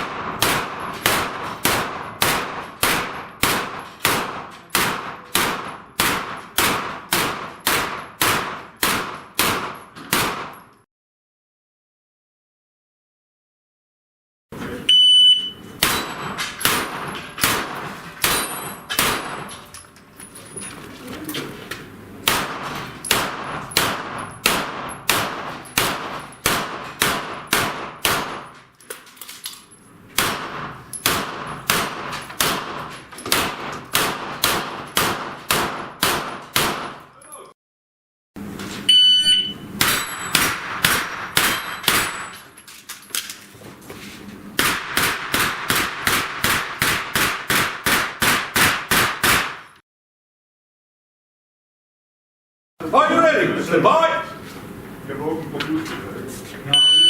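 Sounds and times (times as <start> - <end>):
rapid pistol gunshots: 0.0 - 10.6, 16.6 - 18.4, 19.0 - 19.5, 22.2 - 28.6, 30.2 - 37.0, 39.8 - 42.2, 44.6 - 49.7
short high beep: 14.9 - 15.6, 38.9 - 40.3, 56.7 - 57.0.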